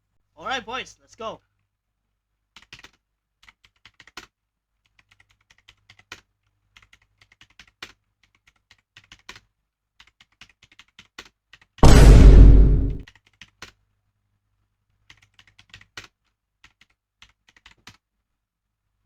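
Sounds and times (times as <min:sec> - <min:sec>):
mechanical keyboard typing: 0:02.6 - 0:11.8, 0:15.1 - 0:18.0.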